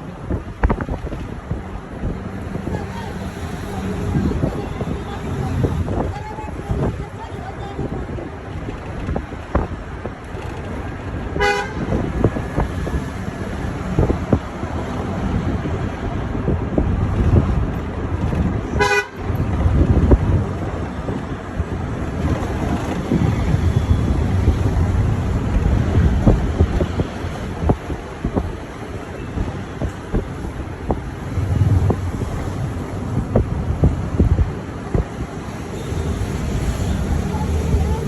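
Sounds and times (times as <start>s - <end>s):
bus road rumble: 0.0s - 38.0s
wind noise: 0.0s - 38.0s
vehicle horn tooting: 11.4s - 11.8s, 18.8s - 19.2s, 35.7s - 37.3s.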